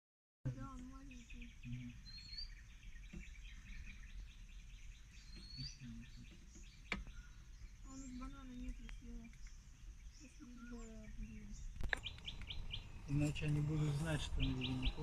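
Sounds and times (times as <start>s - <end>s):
insects buzzing: 0.5s - 15.0s
rising bird chirps: 0.6s - 15.0s
low steady rumble: 7.4s - 15.0s.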